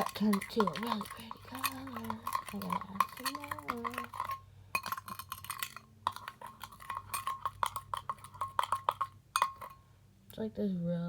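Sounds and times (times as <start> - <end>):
spoon scraping container: 0.0 - 9.8.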